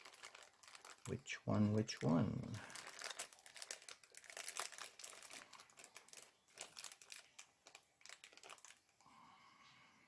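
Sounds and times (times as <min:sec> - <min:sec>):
small screwdrivers clicking and crinkling: 0:02.6 - 0:09.0.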